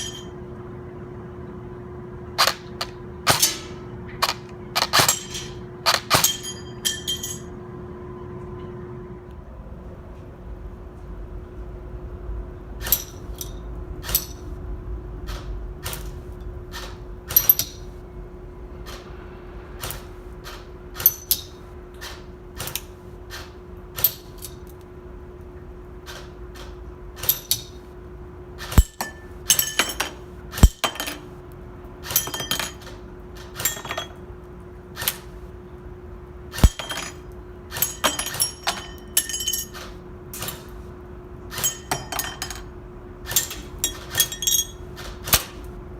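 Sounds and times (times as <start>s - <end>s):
steady low hum: 0.0s - 45.9s
pellets clinking on target: 28.7s - 31.2s, 36.6s - 39.7s.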